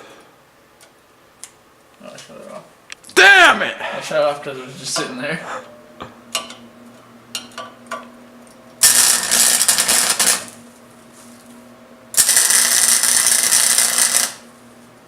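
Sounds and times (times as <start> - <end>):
welding arc crackling: 8.8 - 10.6, 12.1 - 14.6.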